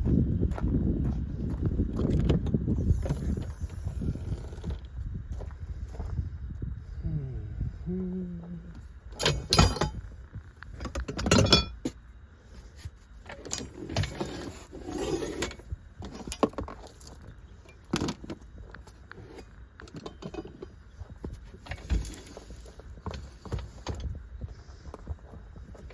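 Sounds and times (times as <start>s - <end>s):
metal tools clinking: 9.2s - 10.0s, 10.9s - 11.8s.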